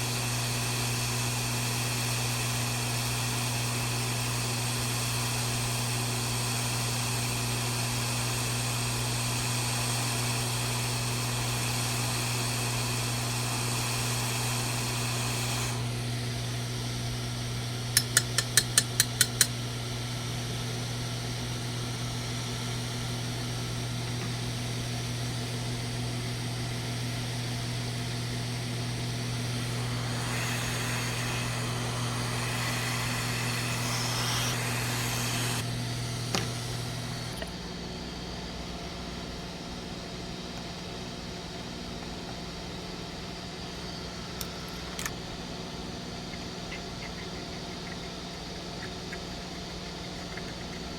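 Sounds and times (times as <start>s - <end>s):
small motor humming: 28.5s - 37.6s.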